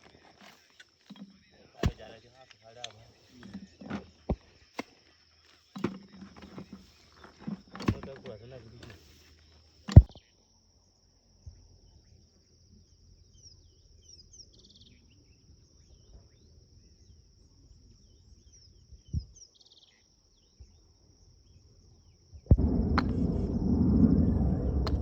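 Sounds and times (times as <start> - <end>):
crickets trilling: 0.0 - 25.0
sharp thump: 22.5 - 25.0.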